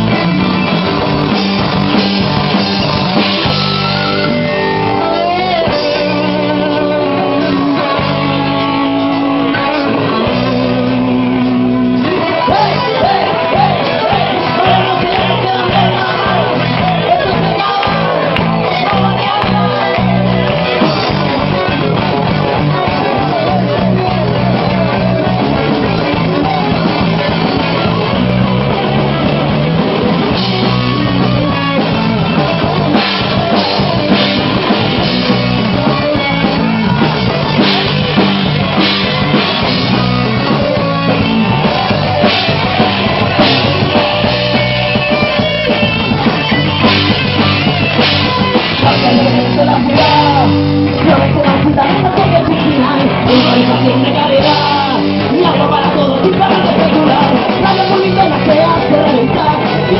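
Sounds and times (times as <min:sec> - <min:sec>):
bass guitar: 0:00.0 - 0:59.9
drum kit: 0:00.0 - 0:59.9
electric guitar: 0:00.0 - 0:59.9.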